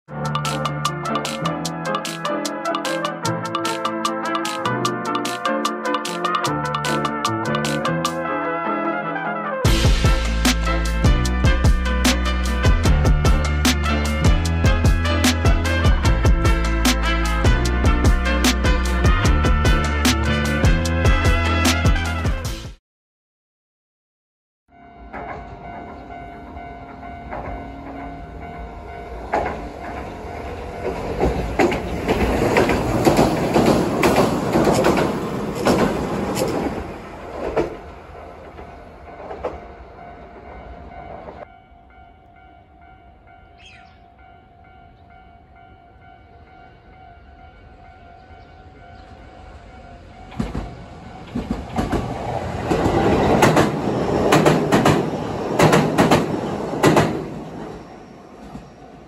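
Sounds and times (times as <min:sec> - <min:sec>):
train wheels clacking: 0:30.8 - 0:36.8, 0:50.3 - 0:57.7.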